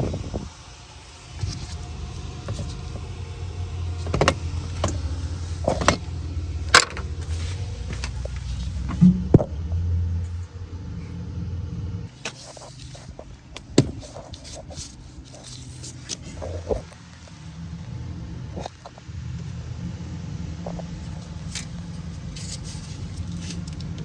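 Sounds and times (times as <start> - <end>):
skid steer engine rumbling: 0.0 - 24.0
sharp clunks and knocks: 7.9 - 9.6.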